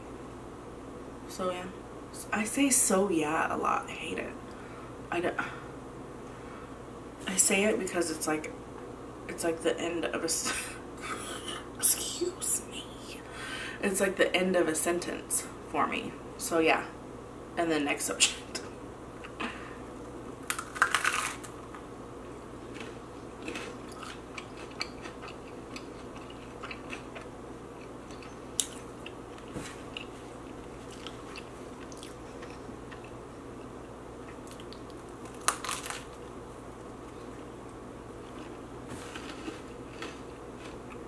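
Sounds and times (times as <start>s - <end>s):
crunchy snack bites: 20.4s - 21.7s, 34.4s - 36.2s.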